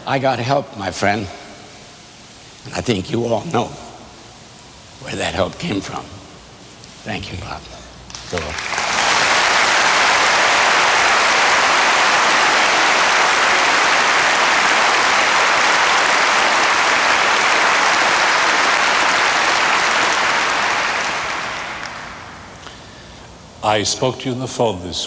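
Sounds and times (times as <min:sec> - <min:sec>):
large audience applauding: 0:08.1 - 0:22.6.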